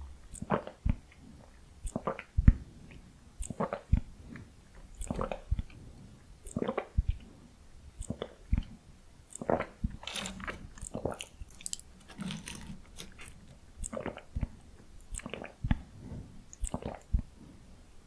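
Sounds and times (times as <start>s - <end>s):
wet mouth clicks: 0.3s - 1.0s, 1.8s - 4.0s, 5.0s - 5.8s, 6.4s - 7.2s, 8.0s - 8.7s, 9.3s - 10.0s, 10.8s - 14.5s, 15.1s - 15.8s, 16.5s - 17.2s
crunchy chewing: 9.3s - 14.2s.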